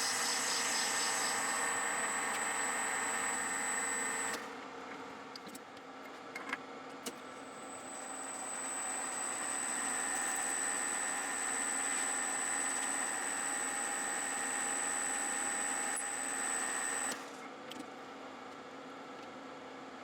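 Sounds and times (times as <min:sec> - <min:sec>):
metal lathe whining: 0:00.0 - 0:04.4.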